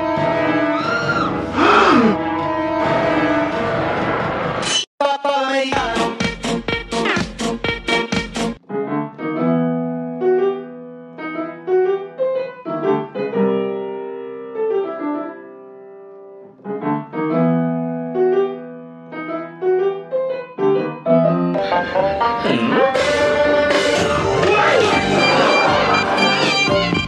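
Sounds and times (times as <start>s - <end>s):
slow piano melody: 8.6s - 27.0s.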